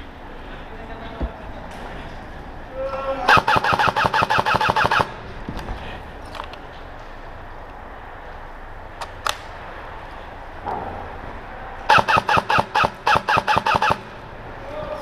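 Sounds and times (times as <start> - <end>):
airsoft gun shots: 3.3 - 5.1, 11.9 - 14.0.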